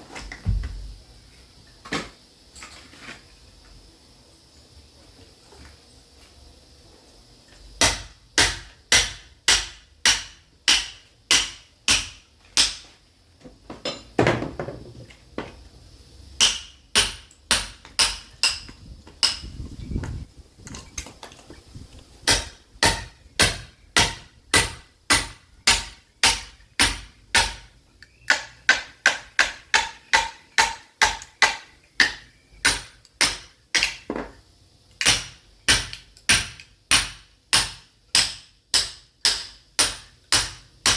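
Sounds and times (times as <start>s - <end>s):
sledgehammer striking steel chisel: 7.8s - 12.9s, 16.4s - 19.5s, 22.2s - 27.7s, 28.3s - 34.0s, 35.0s - 40.9s.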